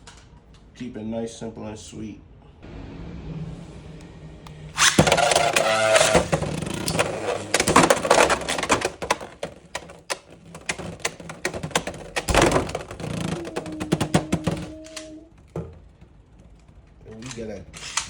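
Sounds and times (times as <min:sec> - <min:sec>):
spinning top launcher whir: 0:04.7 - 0:07.6.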